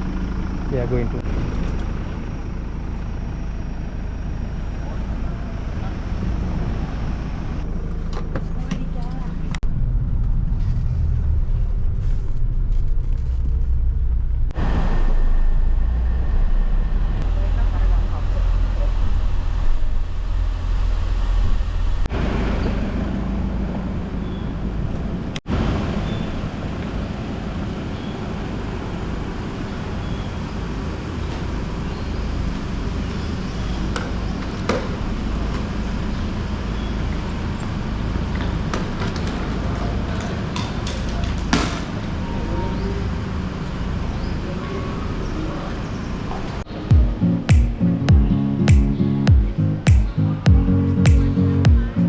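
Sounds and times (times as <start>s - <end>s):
vehicle engine and road noise: 0.0s - 52.0s.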